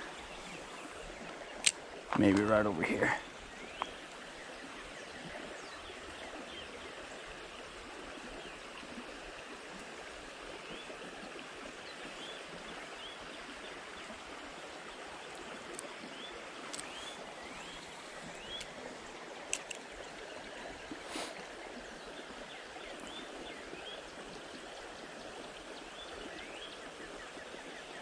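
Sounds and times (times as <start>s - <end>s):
creek water flowing: 0.0s - 28.0s.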